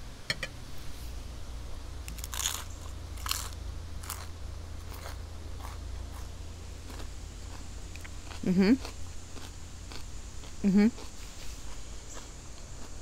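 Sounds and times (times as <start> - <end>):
steady low hum: 0.0 - 13.0
chips being chewed: 2.1 - 13.0.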